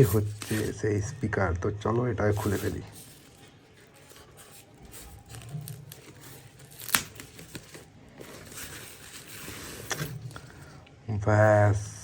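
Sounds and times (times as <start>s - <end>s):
packaging crinkling and rustling: 0.0s - 0.8s, 2.3s - 10.7s
packaging tearing: 2.3s - 10.5s.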